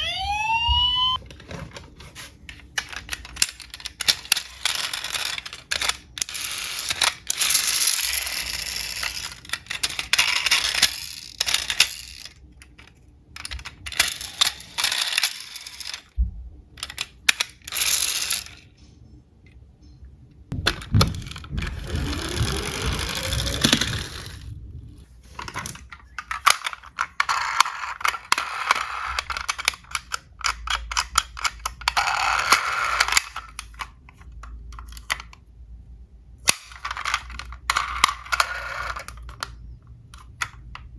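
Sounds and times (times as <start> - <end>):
whir rising in pitch: 0.0 - 1.2, 21.7 - 25.1
toy cars rolling and clattering: 1.3 - 16.1, 16.8 - 18.8, 20.5 - 24.6, 25.3 - 35.5, 36.4 - 40.9.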